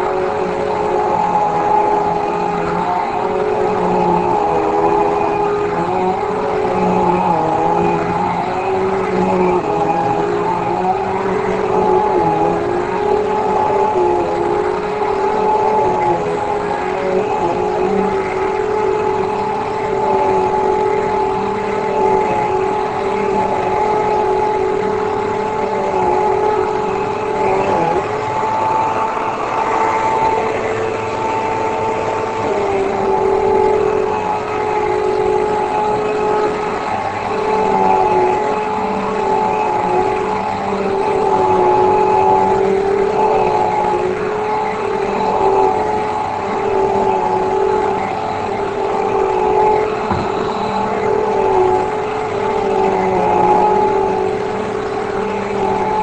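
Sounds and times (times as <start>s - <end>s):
vacuum cleaner motor whine: 0.0s - 56.0s.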